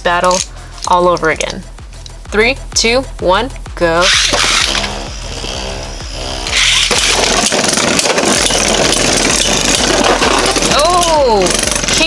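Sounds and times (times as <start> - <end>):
spinning tops clashing: 0.0 - 2.2, 6.3 - 12.0
spinning tops whining: 0.0 - 12.0
ripcords torn out: 4.0 - 12.0.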